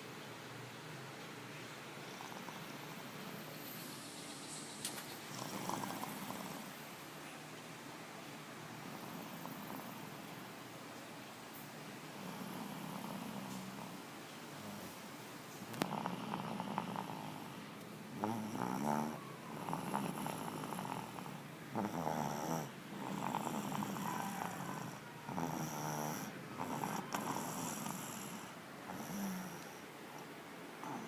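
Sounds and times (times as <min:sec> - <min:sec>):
rattling snoring: 0:02.0 - 0:03.4, 0:05.1 - 0:06.8, 0:12.2 - 0:14.0, 0:15.6 - 0:17.6, 0:18.2 - 0:29.8, 0:30.8 - 0:31.0.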